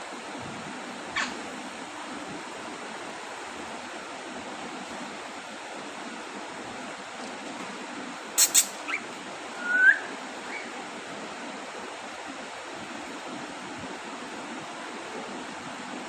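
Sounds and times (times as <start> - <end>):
steady hiss: 7.8 - 16.0
bird whistle call: 8.4 - 9.0, 9.6 - 10.7
bird chirp: 8.4 - 10.8.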